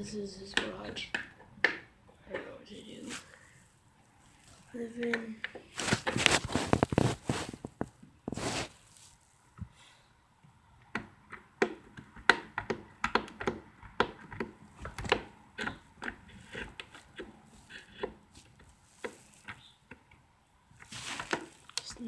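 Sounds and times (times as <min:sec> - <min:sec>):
hard objects clicking and knocking: 0:10.8 - 0:20.2.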